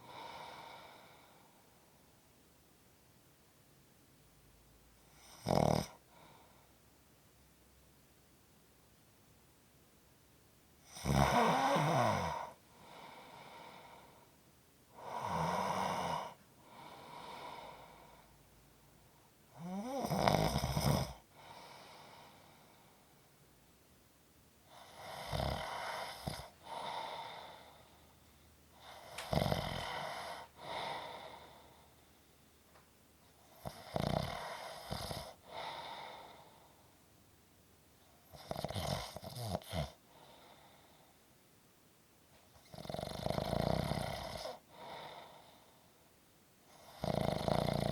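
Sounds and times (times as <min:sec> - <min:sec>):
quiet breath: 0:00.0 - 0:02.3, 0:04.8 - 0:07.2, 0:10.8 - 0:23.5, 0:24.6 - 0:37.2, 0:38.0 - 0:41.4, 0:42.3 - 0:47.9
person snoring: 0:05.1 - 0:06.4, 0:10.8 - 0:14.2, 0:15.0 - 0:18.2, 0:19.5 - 0:22.7, 0:24.7 - 0:27.9, 0:28.8 - 0:31.8, 0:33.5 - 0:36.5, 0:38.3 - 0:40.7, 0:42.6 - 0:45.6, 0:46.7 - 0:47.9.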